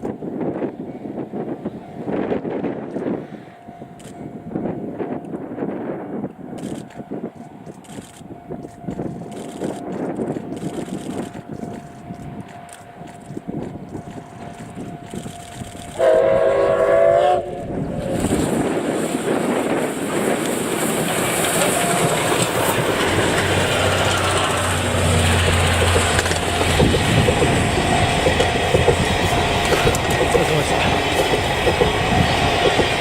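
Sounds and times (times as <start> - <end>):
train passing with wheel clatter: 0.0 - 33.0
steam whistle: 16.0 - 18.2.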